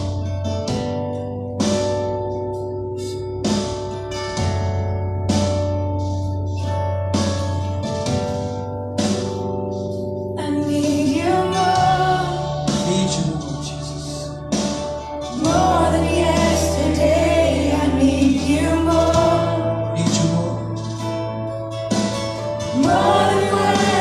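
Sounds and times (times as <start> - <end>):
band with sustained bass: 0.0 - 24.0
voices singing gospel: 10.4 - 14.3, 15.3 - 20.3, 22.7 - 24.0.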